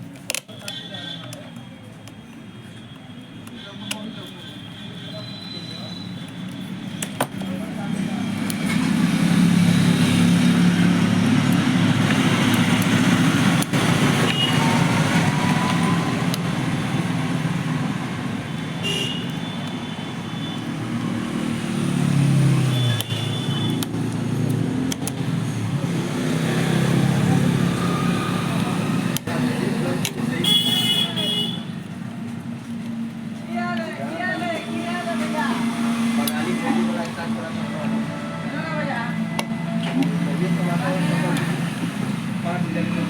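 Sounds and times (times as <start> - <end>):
vehicles passing: 5.2 - 43.0
sharp clicks: 22.5 - 25.4.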